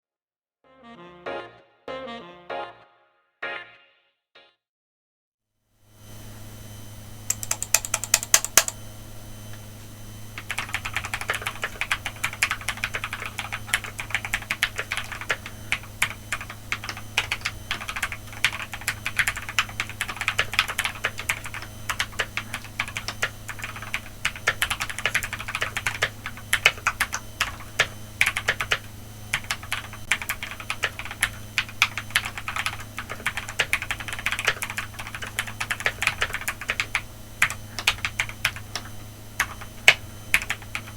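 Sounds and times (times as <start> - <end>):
steady low hum: 5.9 - 40.9
typing on mechanical keyboard: 7.3 - 8.8, 10.4 - 40.9.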